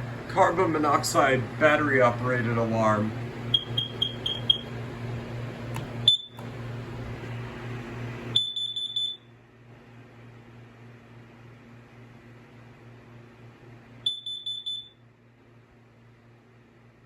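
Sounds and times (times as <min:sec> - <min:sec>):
steady low hum: 0:00.0 - 0:17.0
alarm high-pitched beeps: 0:03.5 - 0:04.7, 0:06.1 - 0:06.4, 0:08.4 - 0:09.2, 0:14.1 - 0:15.0.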